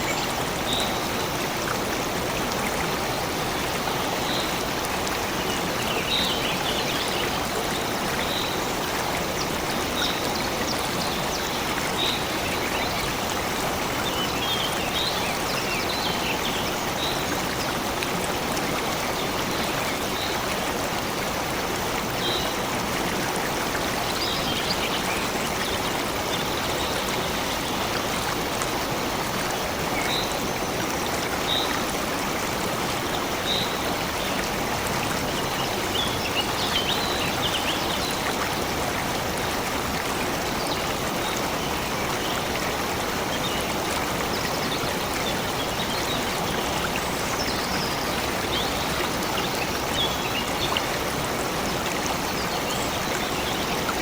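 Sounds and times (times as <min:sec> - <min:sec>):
stream of water running: 0:00.0 - 0:54.0.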